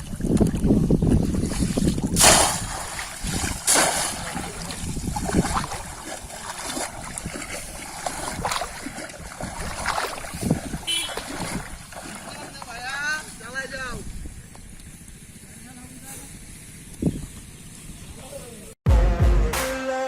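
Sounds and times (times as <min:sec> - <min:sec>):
water splashing in pond: 0:00.0 - 0:13.4.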